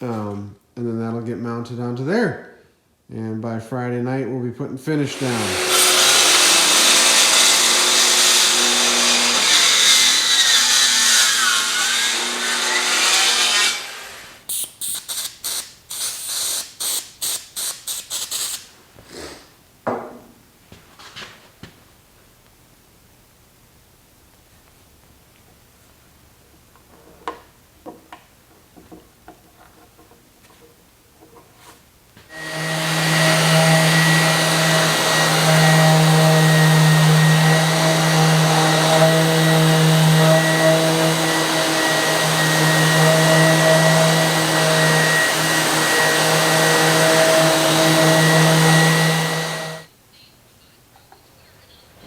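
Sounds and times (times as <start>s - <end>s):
shop machine humming: 32.4s - 49.9s.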